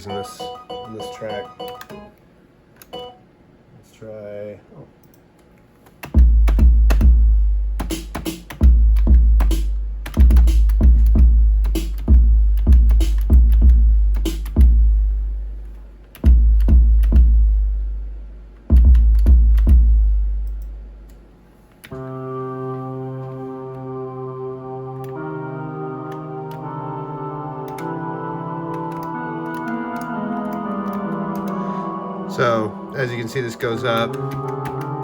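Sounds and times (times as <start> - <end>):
deep kick drums: 6.2 - 15.1, 16.3 - 18.0, 18.7 - 20.4
sustained synthesizer chord: 21.9 - 35.0.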